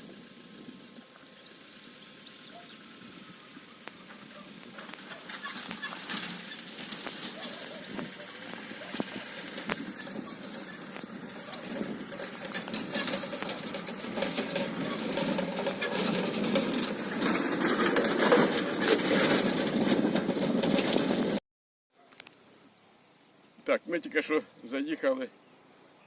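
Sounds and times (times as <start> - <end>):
small tractor engine rattling: 0.2 - 21.4.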